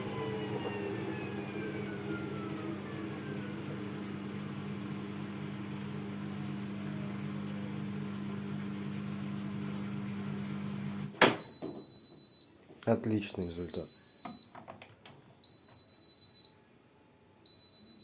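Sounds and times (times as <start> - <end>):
washing machine spin winding down: 0.0 - 12.3.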